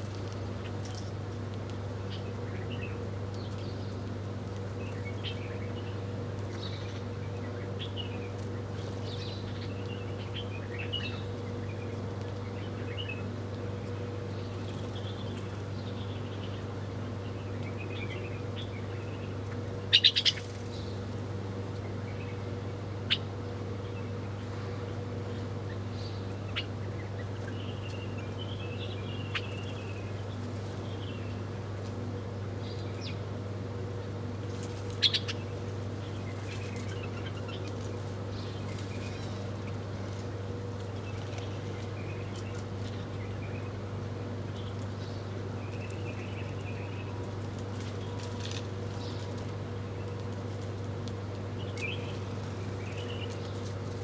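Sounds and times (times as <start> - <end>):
small birds chirping: 14.3 - 22.4, 25.6 - 31.6, 34.2 - 50.6, 51.5 - 54.0.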